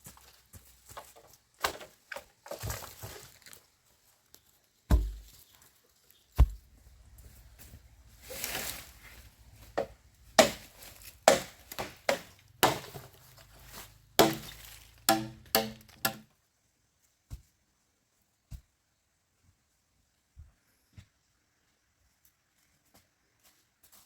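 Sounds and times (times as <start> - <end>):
sharp chopping knocks: 4.9 - 5.3, 10.4 - 13.1, 14.2 - 16.2.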